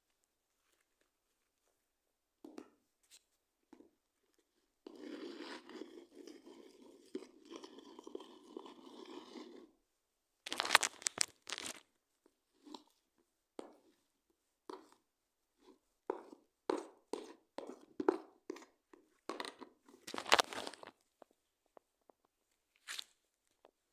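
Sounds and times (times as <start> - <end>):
slime being worked by hand: 10.5 - 11.9, 14.7 - 21.0.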